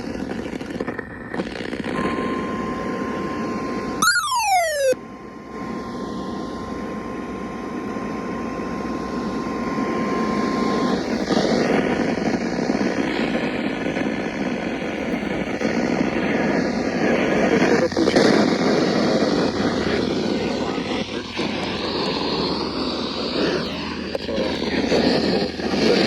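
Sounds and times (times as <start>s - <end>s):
brief falling sweep: 4.0s - 5.0s
steady warning alert tone: 4.0s - 5.0s.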